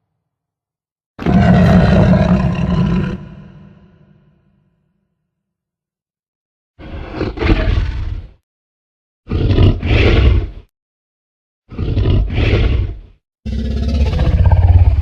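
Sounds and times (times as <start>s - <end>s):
deep rumbling dinosaur roars: 1.2s - 4.4s, 11.7s - 15.0s.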